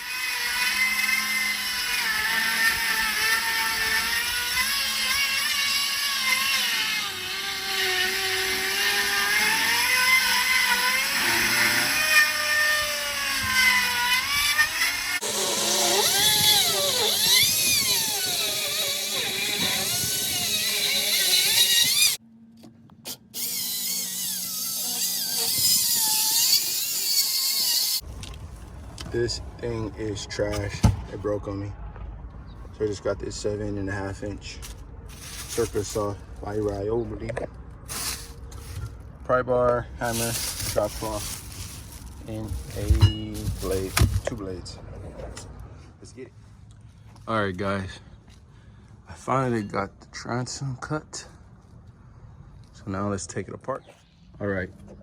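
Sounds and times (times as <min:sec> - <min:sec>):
power tool motor whining: 0:00.0 - 0:22.2, 0:23.0 - 0:28.0, 0:34.6 - 0:36.8, 0:37.9 - 0:39.0, 0:40.0 - 0:44.4.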